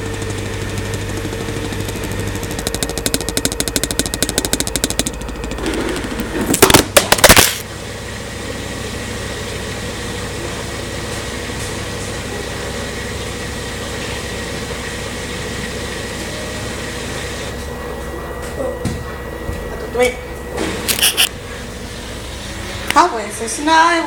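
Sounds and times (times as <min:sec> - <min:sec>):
washing machine knocks: 0:00.0 - 0:06.7
washing machine hum and whine: 0:00.0 - 0:24.0.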